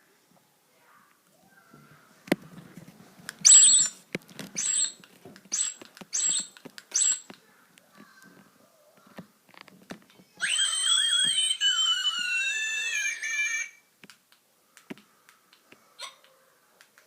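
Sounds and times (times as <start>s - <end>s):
voice-changer toy squeaking: 3.4s - 4.0s, 4.6s - 7.3s, 10.4s - 13.8s.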